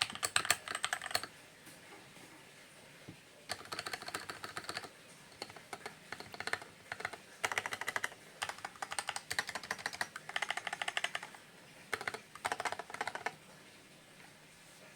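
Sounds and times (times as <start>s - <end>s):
mechanical keyboard typing: 0.0s - 1.3s, 3.5s - 13.4s.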